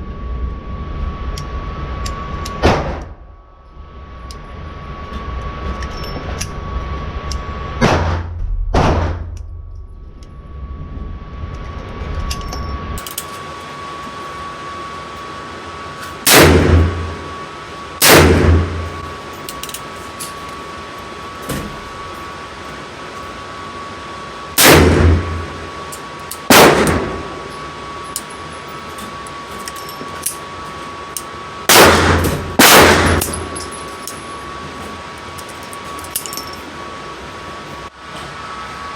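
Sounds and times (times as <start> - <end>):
steady high hum: 0.0 - 38.9
handgun shots ringing: 26.5 - 27.2, 31.7 - 33.8.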